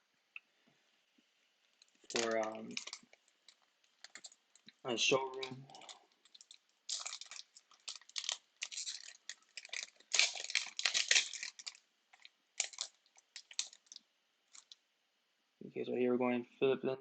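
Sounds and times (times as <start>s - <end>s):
foil wrapper tearing and crinkling: 1.7s - 14.8s.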